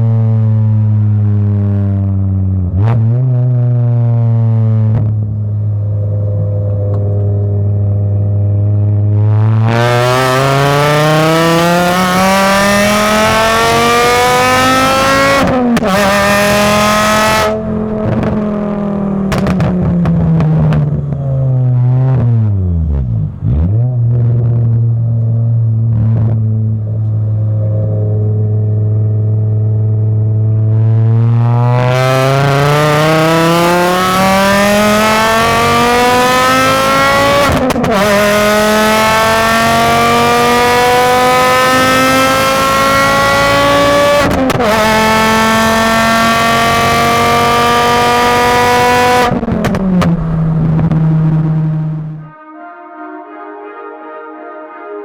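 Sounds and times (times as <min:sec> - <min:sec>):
car engine revving through gears: 0:02.6 - 0:52.3.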